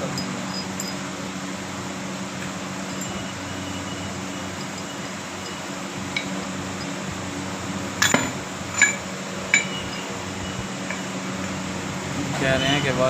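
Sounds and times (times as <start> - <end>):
metal tools clinking: 0.0 - 1.1, 2.9 - 7.0, 8.0 - 11.6
steady low hum: 0.0 - 13.0.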